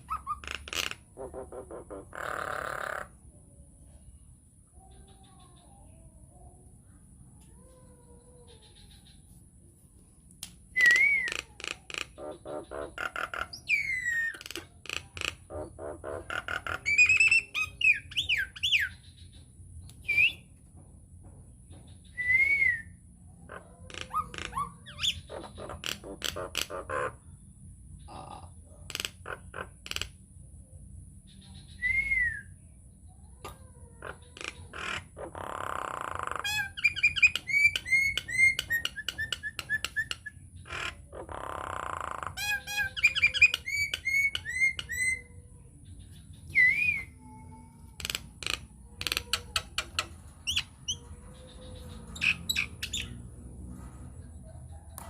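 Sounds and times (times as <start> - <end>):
myna clicks whistles and squawks: 10.4 - 12.2, 19.9 - 20.5, 22.0 - 22.9, 31.6 - 32.5, 35.8 - 40.9, 41.8 - 45.3, 46.4 - 47.4, 48.0 - 53.2.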